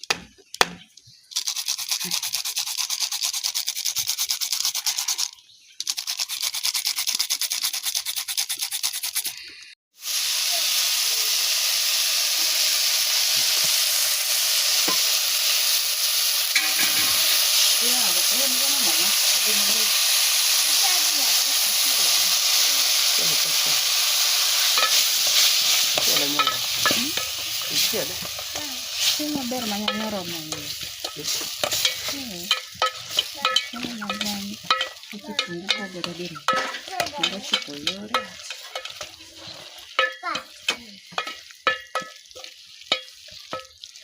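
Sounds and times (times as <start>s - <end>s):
fast rubbing strokes: 1.4s - 5.3s, 5.9s - 9.4s
food sizzling in a hot pan: 9.9s - 44.0s.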